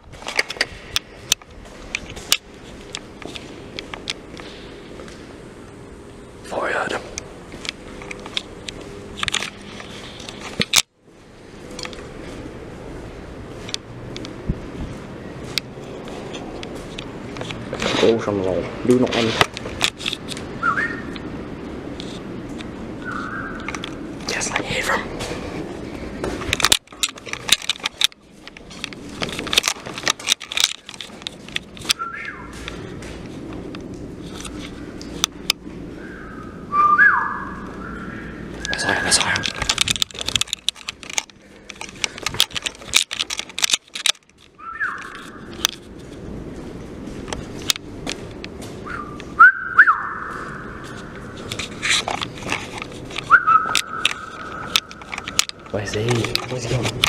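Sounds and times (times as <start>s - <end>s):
sharp clicks knocks and scrapes: 7.1s - 10.9s, 15.5s - 21.3s, 21.9s - 32.0s, 32.6s - 35.8s, 38.5s - 46.3s, 47.0s - 49.4s, 50.8s - 57.0s
person whistling: 36.7s - 37.4s, 48.9s - 50.2s, 53.3s - 54.0s.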